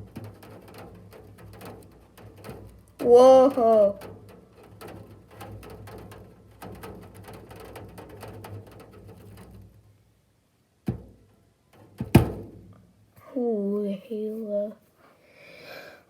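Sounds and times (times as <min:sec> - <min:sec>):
hailstones pattering: 0:00.0 - 0:13.1
sharp knock: 0:12.0 - 0:12.7.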